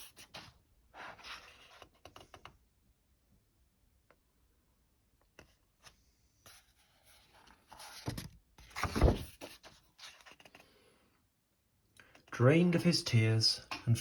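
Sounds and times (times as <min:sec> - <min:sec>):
book page turning: 0:00.1 - 0:02.3, 0:05.4 - 0:10.6
paper rustling: 0:05.4 - 0:10.8.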